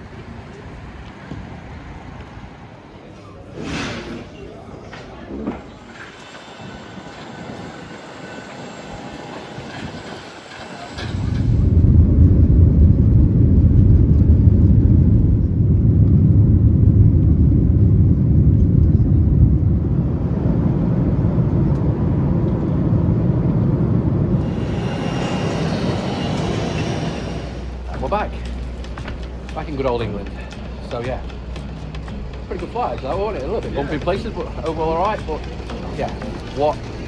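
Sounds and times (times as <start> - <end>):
airliner cabin background noise: 0.0 - 37.0
loud low rumble of takeoff: 6.6 - 37.0.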